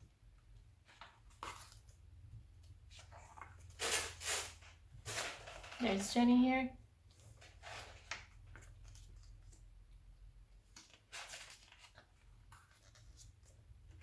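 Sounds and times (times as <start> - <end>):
magazine pages rustling: 0.8 - 6.0, 7.1 - 9.7, 10.7 - 14.0.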